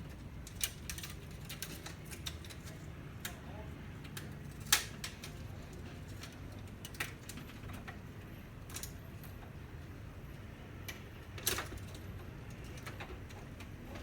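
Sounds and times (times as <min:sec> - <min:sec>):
clicks and clinks of small parts: 0:00.4 - 0:03.4.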